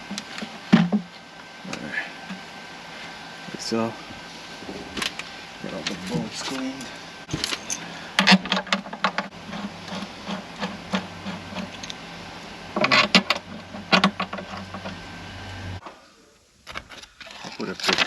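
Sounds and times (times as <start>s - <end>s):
metal scraping: 4.3s - 12.0s.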